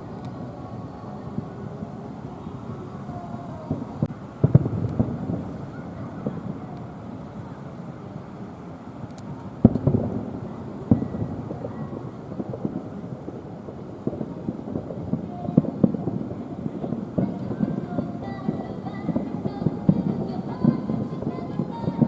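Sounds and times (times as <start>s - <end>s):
distant fireworks booming: 0.0s - 22.0s
wind rumble on microphone: 0.0s - 22.0s.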